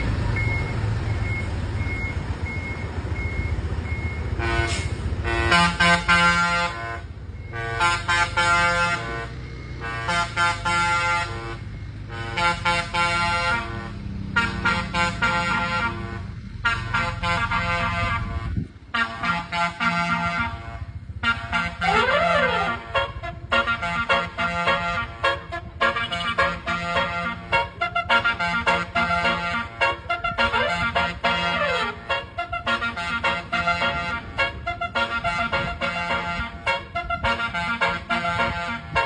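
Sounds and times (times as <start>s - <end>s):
reversing beeper beeping: 0.0s - 4.3s
engine running: 0.0s - 39.0s
vehicle air horn blasts: 4.4s - 39.0s.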